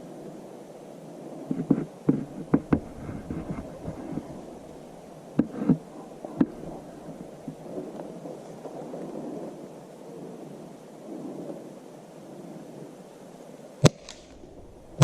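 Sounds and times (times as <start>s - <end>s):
steady low noise: 0.0s - 15.0s
sharp knocks and thumps: 1.5s - 4.3s.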